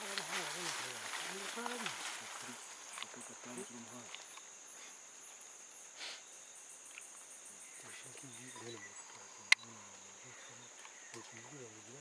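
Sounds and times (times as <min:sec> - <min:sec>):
insects droning: 0:00.0 - 0:12.0.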